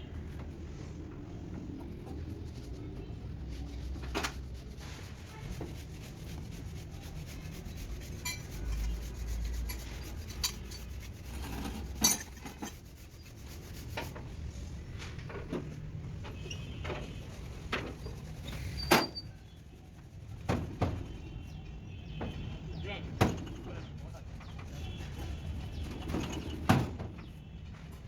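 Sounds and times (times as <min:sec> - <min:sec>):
rubbing and scraping: 0:00.0 - 0:21.6
sharp metal clinks and knocks: 0:11.4 - 0:12.8.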